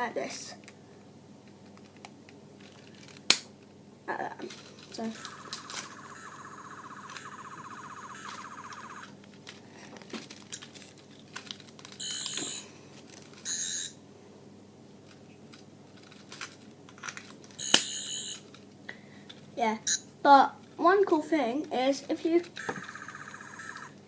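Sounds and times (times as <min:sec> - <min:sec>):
toy electronic pulsing buzz: 0:05.1 - 0:09.1, 0:17.6 - 0:18.4, 0:22.6 - 0:23.9
short electronic bursts: 0:05.2 - 0:09.1.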